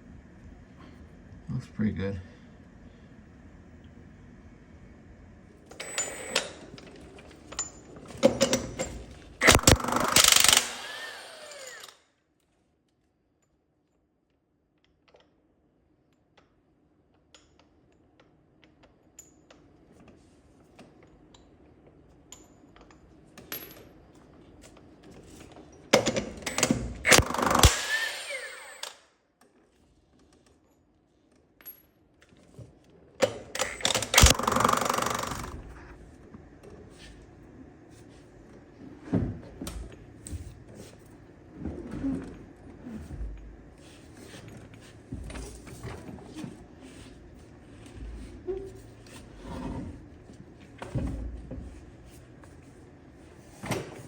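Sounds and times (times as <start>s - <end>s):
power tool bursts: 9.4s - 12.0s, 26.5s - 29.1s, 33.6s - 35.8s.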